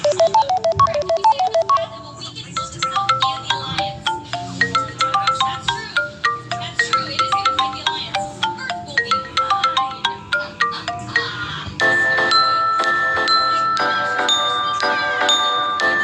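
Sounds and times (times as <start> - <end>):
marimba ringtone melody: 0.0 - 16.0.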